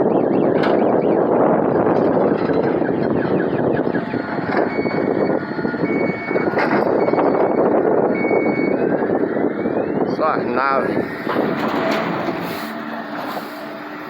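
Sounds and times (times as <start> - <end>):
backup alarm beeping: 0.0 - 11.6
heavy earthmoving machinery running: 0.0 - 14.0.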